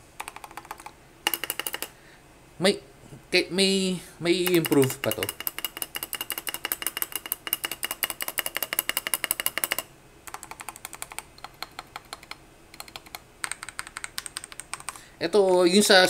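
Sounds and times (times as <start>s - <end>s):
mechanical keyboard typing: 0.2s - 1.9s, 4.5s - 15.0s.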